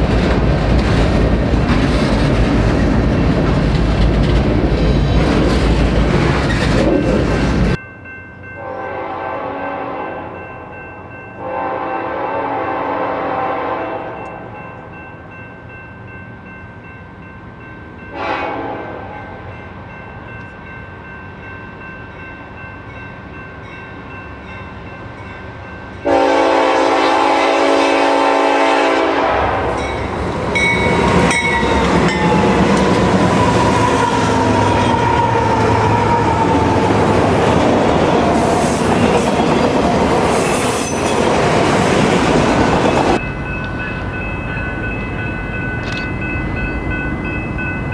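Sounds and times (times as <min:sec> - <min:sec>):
train wheel clatter: 0:00.0 - 0:07.8, 0:29.8 - 0:47.9
train rumbling: 0:00.0 - 0:08.2, 0:10.3 - 0:47.9
locomotive horn: 0:08.6 - 0:10.4, 0:11.4 - 0:14.5, 0:18.1 - 0:19.4, 0:26.0 - 0:43.2.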